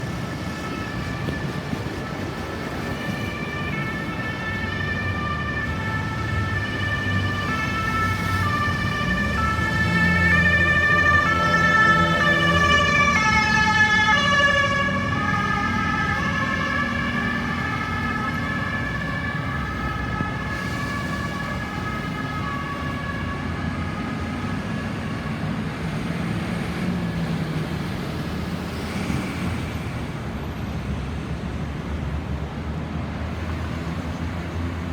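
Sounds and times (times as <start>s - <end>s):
ambulance siren wailing: 0.0s - 26.3s
low traffic rumble: 0.0s - 34.9s.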